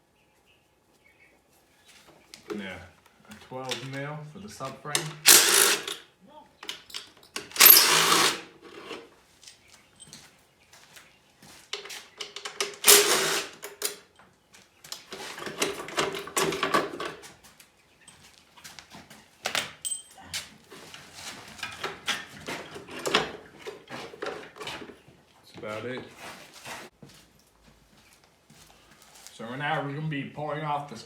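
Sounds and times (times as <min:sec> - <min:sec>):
scraping and rustling: 0:07.4 - 0:13.8, 0:14.6 - 0:19.4, 0:20.2 - 0:27.3
metal clicks and knocks: 0:11.8 - 0:14.1.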